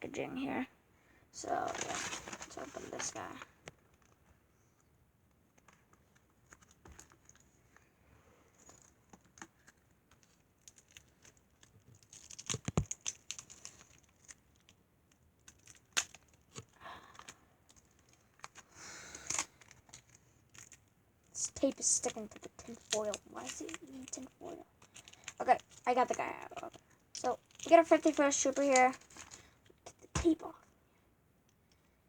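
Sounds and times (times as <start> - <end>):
foil and tape crinkling and tearing: 1.5 - 3.4, 8.7 - 14.8, 15.4 - 30.5.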